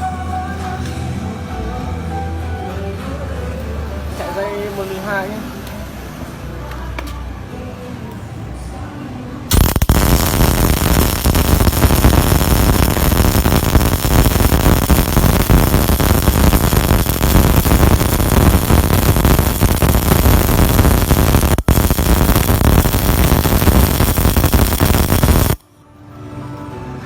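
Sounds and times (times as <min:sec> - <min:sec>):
welding arc crackling: 0:09.5 - 0:25.6.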